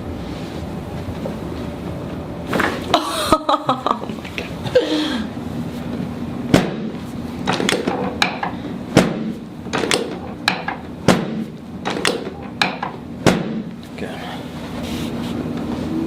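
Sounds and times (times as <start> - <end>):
sharp clicks and knocks: 6.5 - 13.7.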